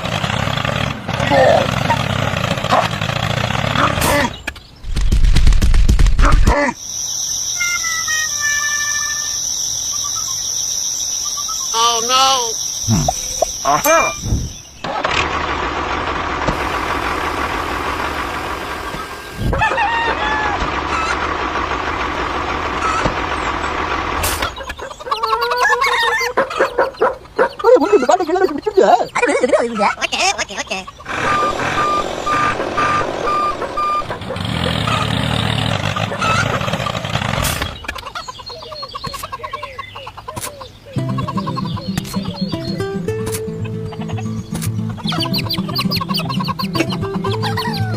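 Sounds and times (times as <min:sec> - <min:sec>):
truck reversing alarm beeping: 0:11.4 - 0:14.5, 0:31.1 - 0:36.5
chickens clucking: 0:11.7 - 0:15.0, 0:18.8 - 0:47.9
engine running steadily: 0:15.0 - 0:19.5, 0:20.5 - 0:24.5, 0:31.1 - 0:37.8.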